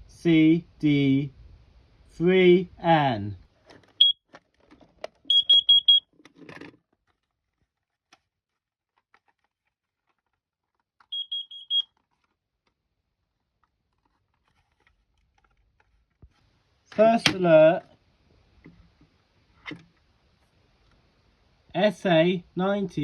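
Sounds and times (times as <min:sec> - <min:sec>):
carbon monoxide alarm beeping: 0:04.0 - 0:04.2, 0:05.3 - 0:06.1, 0:11.1 - 0:11.9.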